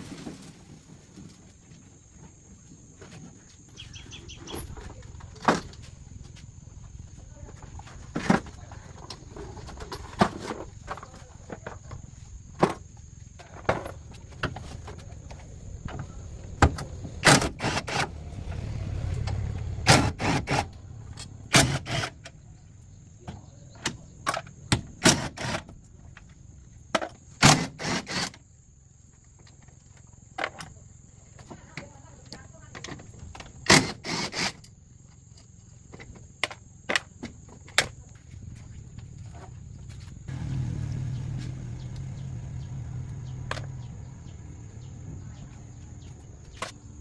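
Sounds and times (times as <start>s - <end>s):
low rumble: 18.1s - 21.6s.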